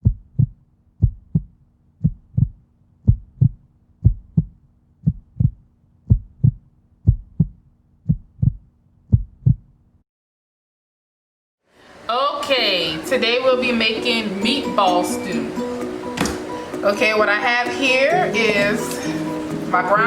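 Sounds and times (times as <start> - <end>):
heartbeat thumps: 0.0 - 9.8.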